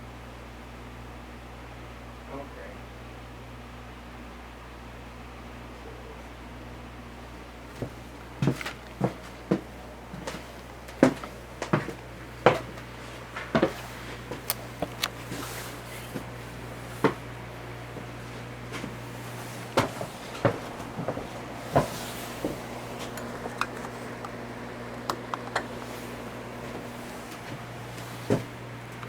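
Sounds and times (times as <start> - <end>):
ceiling fan motor hum: 0.0 - 29.0
sharp clicks and knocks: 13.5 - 15.2, 19.7 - 27.6.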